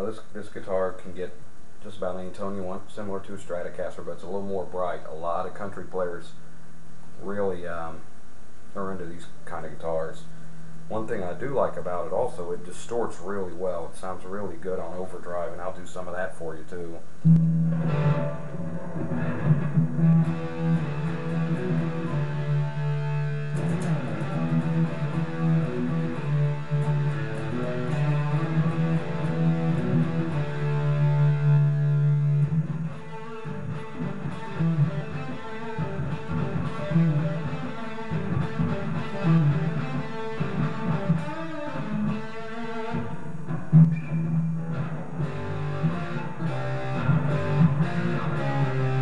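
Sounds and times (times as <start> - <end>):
distorted electric guitar: 16.8 - 49.0.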